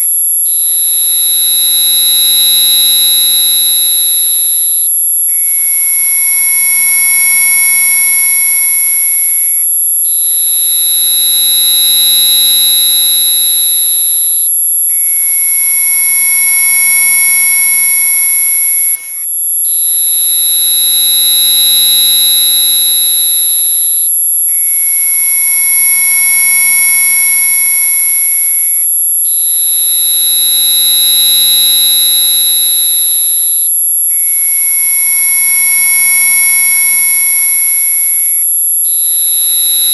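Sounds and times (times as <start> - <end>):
high piercing tone: 14.9 - 21.9.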